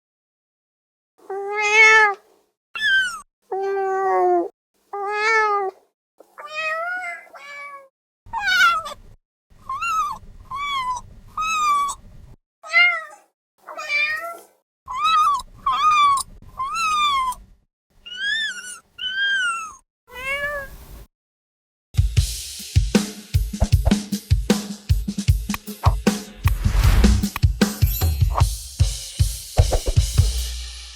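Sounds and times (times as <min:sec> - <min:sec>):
kitten meowing: 0:01.3 - 0:02.2, 0:02.8 - 0:05.8, 0:06.4 - 0:09.0, 0:09.6 - 0:12.0, 0:12.7 - 0:17.4, 0:18.1 - 0:20.7
music with drum beat: 0:22.0 - 0:30.9.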